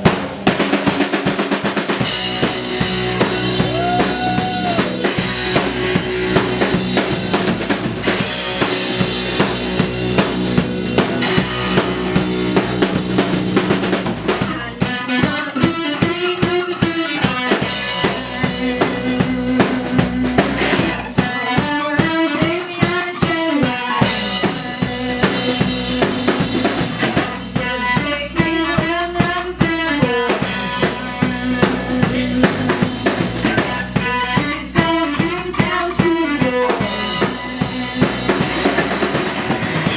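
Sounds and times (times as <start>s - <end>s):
bass drum and snare hits: 0.0s - 14.6s
live rock band playing: 0.0s - 39.9s.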